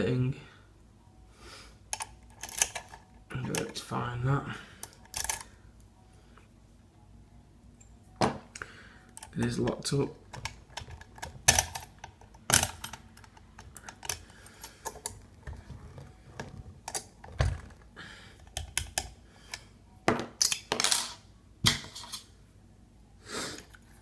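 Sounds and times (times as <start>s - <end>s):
metallic clicks of lock and key: 1.9s - 3.8s, 4.8s - 5.5s, 10.3s - 15.2s, 18.4s - 19.1s.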